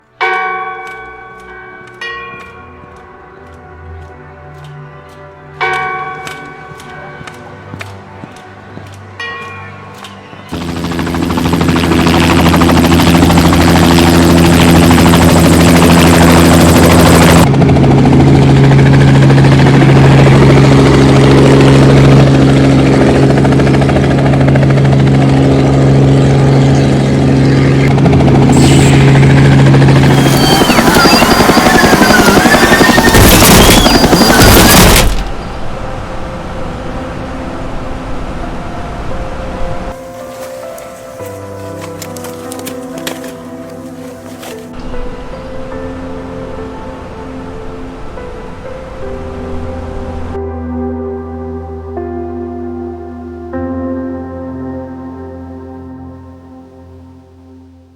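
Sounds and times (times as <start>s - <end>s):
helicopter rotor and engine droning: 9.9s - 35.8s, 39.8s - 44.8s
crash with clattering and squeals: 30.0s - 35.4s.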